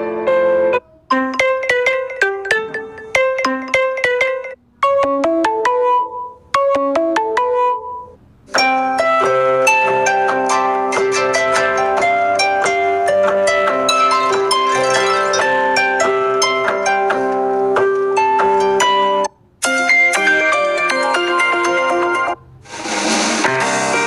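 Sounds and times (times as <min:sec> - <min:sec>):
phone ringtone melody: 0:01.1 - 0:08.2, 0:13.5 - 0:17.0.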